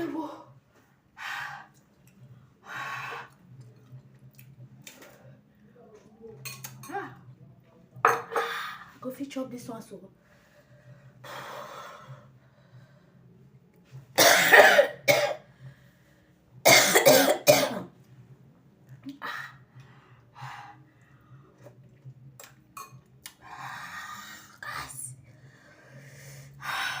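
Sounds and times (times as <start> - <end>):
person coughing: 14.2 - 15.4, 16.6 - 17.9.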